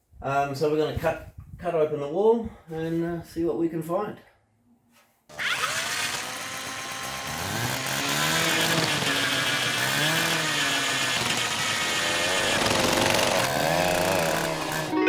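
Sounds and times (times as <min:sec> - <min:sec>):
power tool cutting into wall: 0:05.3 - 0:15.0.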